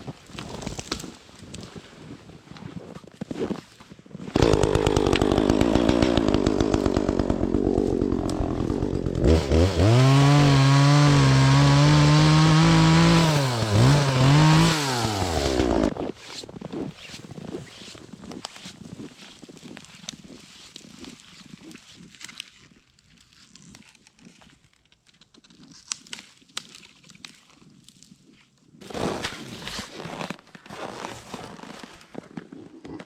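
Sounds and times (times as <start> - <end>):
chainsaw cutting wood: 4.4 - 16.0.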